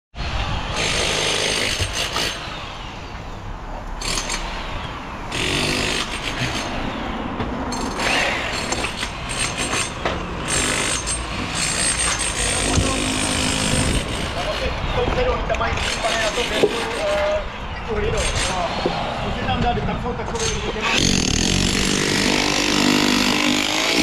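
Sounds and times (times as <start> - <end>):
power tool running in bursts: 4.0 - 7.0.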